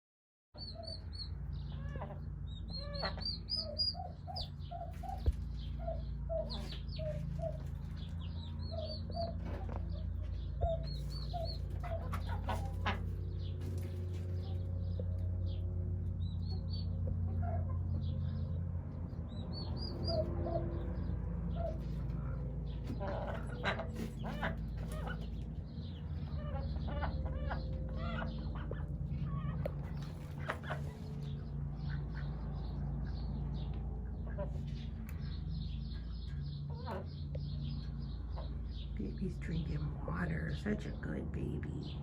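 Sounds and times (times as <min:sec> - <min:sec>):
hen clucking: 0:00.6 - 0:18.5, 0:19.4 - 0:42.0
chicks peeping: 0:00.6 - 0:42.0.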